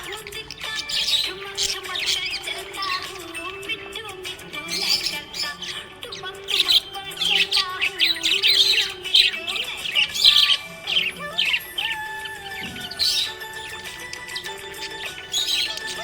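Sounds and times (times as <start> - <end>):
budgerigar chirping: 0.0 - 16.0.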